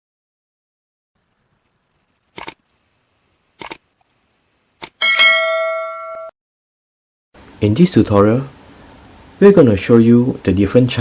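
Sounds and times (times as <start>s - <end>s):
sharp clicks: 2.3s - 2.6s, 3.6s - 3.8s, 4.8s - 5.0s
bell-like chime: 5.0s - 6.4s.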